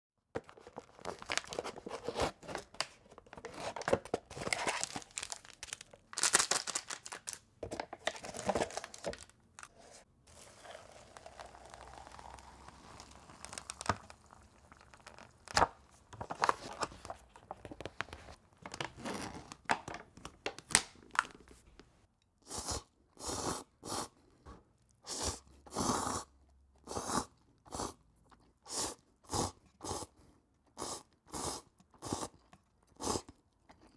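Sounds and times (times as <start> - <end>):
packaging crackling and crinkling: 0.4 - 21.5
slurping noodles: 10.3 - 15.0, 22.4 - 24.2, 25.0 - 28.0, 28.6 - 33.4.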